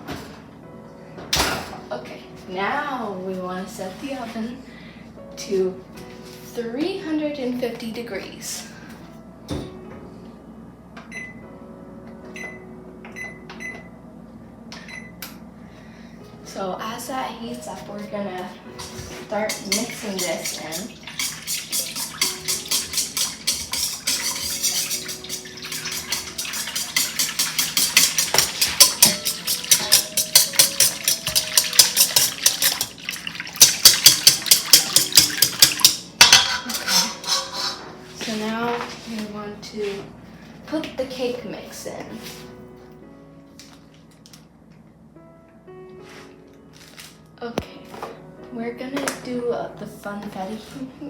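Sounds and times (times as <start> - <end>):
oven button clicks and beeps: 11.1 - 11.4, 12.4 - 13.9, 14.8 - 15.2
whisk clicking against bowl: 19.4 - 36.0.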